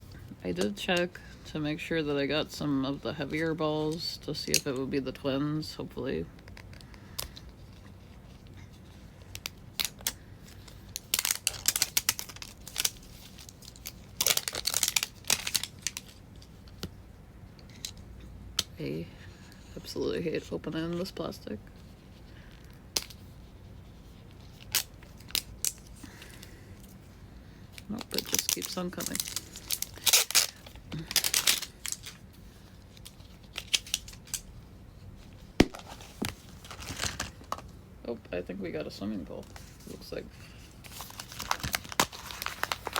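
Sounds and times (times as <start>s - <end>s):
plastic wrapping crinkling and tearing: 9.3s - 16.7s, 24.0s - 26.5s, 27.8s - 34.5s, 35.6s - 37.7s, 39.5s - 42.9s.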